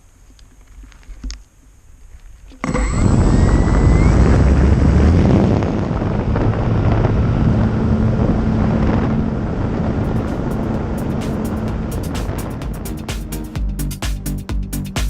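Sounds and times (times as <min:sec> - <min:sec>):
wind rush and motor noise: 0:02.6 - 0:13.6
rising whine: 0:02.6 - 0:14.4.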